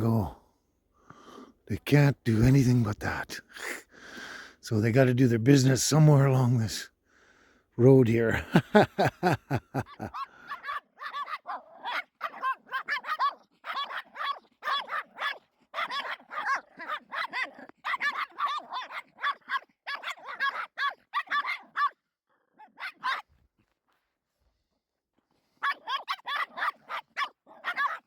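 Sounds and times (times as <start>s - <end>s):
small dogs yapping: 9.8s - 23.4s, 25.5s - 28.0s.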